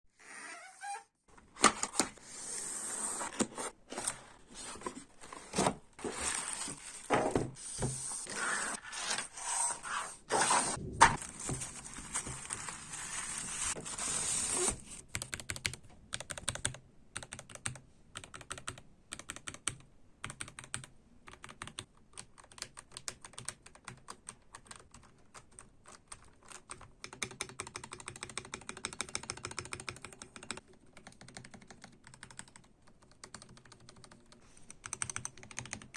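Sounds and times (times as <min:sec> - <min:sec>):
rustling and handling noises: 0:01.3 - 0:15.0
fast typing on mechanical keyboard: 0:15.1 - 0:35.9.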